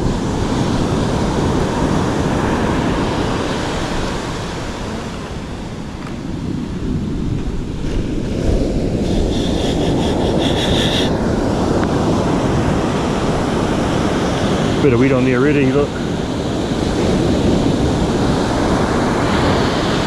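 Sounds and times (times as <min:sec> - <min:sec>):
surf breaking on beach: 0:00.0 - 0:20.0
wind buffeting microphone: 0:00.0 - 0:20.0
high ticking buzz: 0:09.0 - 0:11.2.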